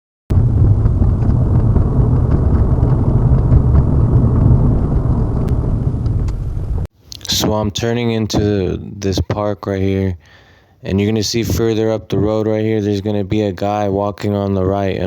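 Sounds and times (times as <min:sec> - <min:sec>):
car engine rumble: 0:00.3 - 0:06.9
road noise: 0:00.3 - 0:06.9.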